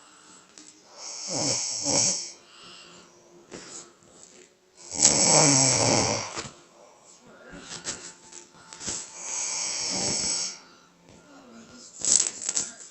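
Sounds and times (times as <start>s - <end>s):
person snoring: 0.0s - 4.0s, 4.8s - 8.0s, 8.9s - 10.9s.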